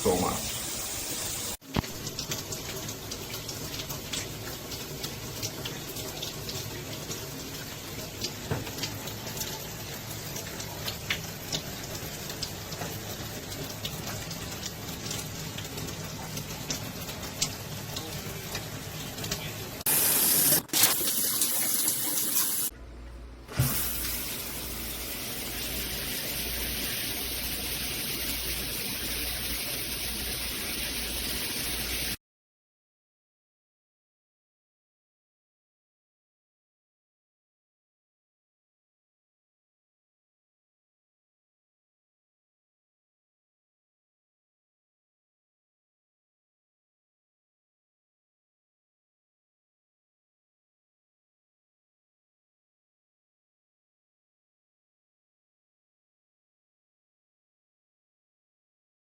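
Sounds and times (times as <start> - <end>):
water spraying from shower head: 14.0 - 22.7, 23.5 - 32.2.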